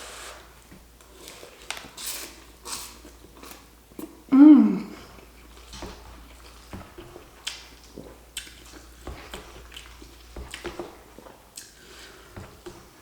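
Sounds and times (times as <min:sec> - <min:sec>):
wet chewing and mouth sounds: 0:04.9 - 0:13.0.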